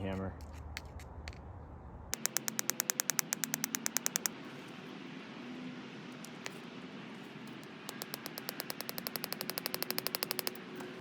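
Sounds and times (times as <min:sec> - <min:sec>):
hammer tapping a nail: 0:02.2 - 0:04.4, 0:07.5 - 0:10.6.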